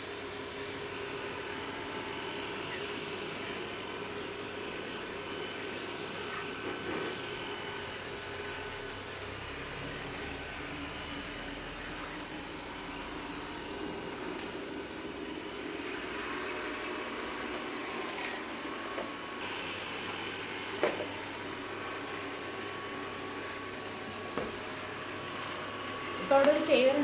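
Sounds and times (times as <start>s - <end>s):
robot vacuum running: 0.0s - 27.0s.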